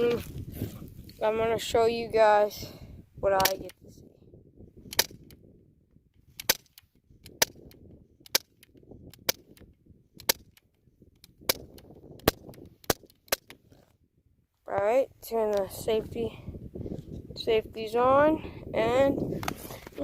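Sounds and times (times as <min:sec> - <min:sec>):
bb gun shots cracking: 0:04.9 - 0:05.3, 0:06.4 - 0:07.7.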